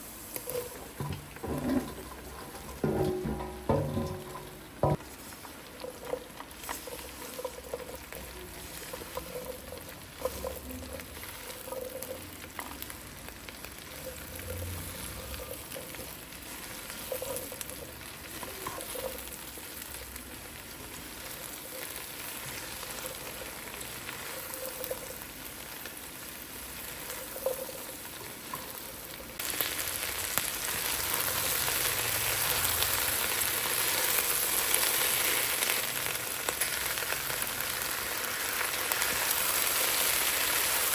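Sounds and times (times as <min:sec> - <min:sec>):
food sizzling in hot oil: 0:00.0 - 0:40.9
light stirring knocks: 0:00.5 - 0:12.7.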